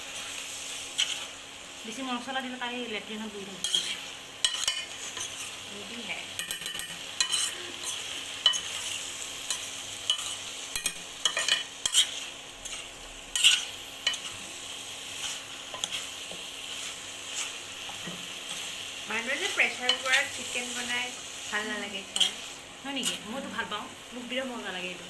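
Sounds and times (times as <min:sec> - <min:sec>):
curry sizzling in a pot: 0:00.0 - 0:25.0
spoon stirring and scraping: 0:03.6 - 0:05.6, 0:06.4 - 0:18.9, 0:19.6 - 0:20.6, 0:22.0 - 0:23.3.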